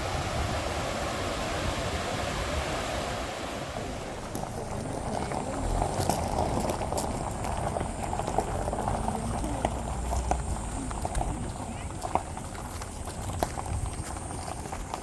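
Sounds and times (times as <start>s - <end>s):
waterfall rushing: 0.0s - 5.5s.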